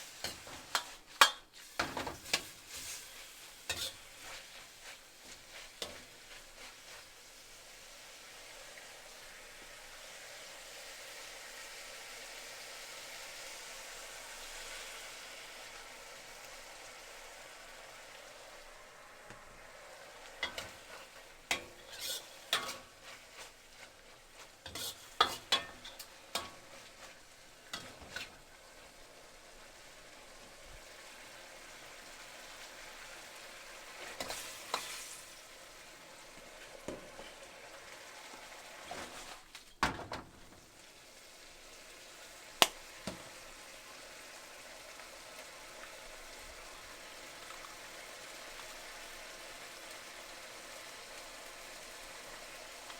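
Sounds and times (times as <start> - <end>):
food sizzling in a pan: 0.0 - 52.9
utensil clinking against a pan: 0.2 - 2.9, 20.4 - 23.0, 24.6 - 26.7.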